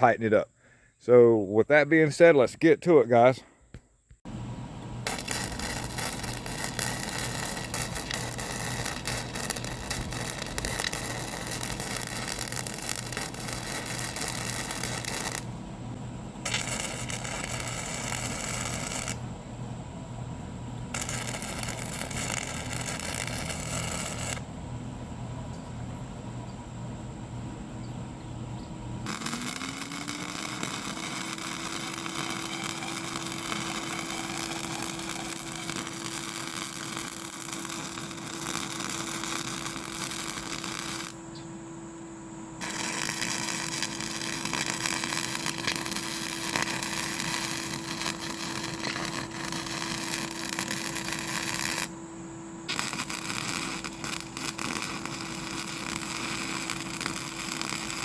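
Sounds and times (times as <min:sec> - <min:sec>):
loud constant hiss: 0:04.0 - 0:58.0
motor whining: 0:04.3 - 0:19.3, 0:28.6 - 0:41.4.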